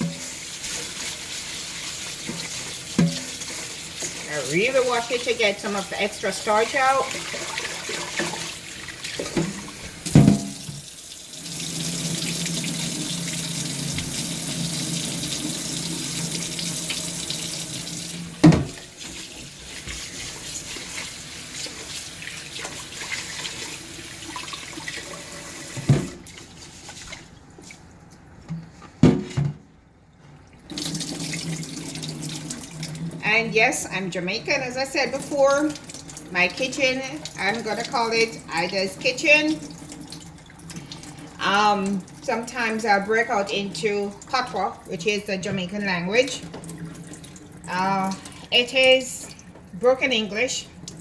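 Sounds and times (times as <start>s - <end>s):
tap running into a pot: 2.2s - 4.2s, 9.1s - 10.8s, 18.4s - 20.4s, 25.6s - 26.4s
pot knocking: 9.3s - 10.8s.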